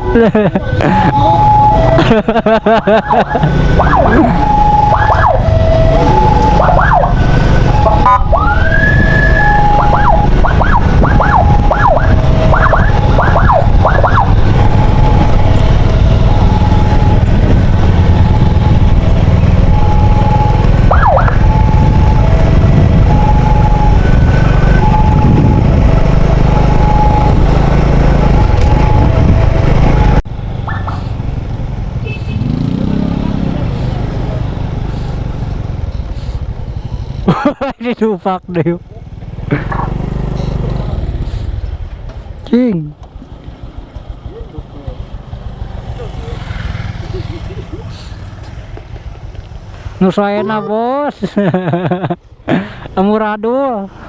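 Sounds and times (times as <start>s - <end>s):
siren up-and-down sweeps: 0.0s - 31.2s
ambulance siren two-note: 0.7s - 2.0s, 3.1s - 17.3s, 19.7s - 25.8s
heavy low rumble: 5.4s - 31.7s.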